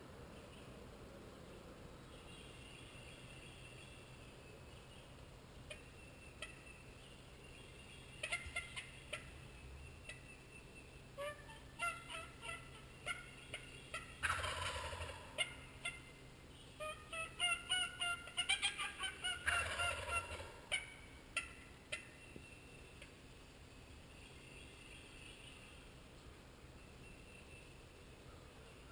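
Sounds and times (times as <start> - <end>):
short sharp turkey calls: 5.6 - 6.8, 8.1 - 10.4, 11.2 - 23.2
turkey gobbling: 5.7 - 6.6, 8.2 - 9.4, 11.2 - 16.2, 16.8 - 22.2.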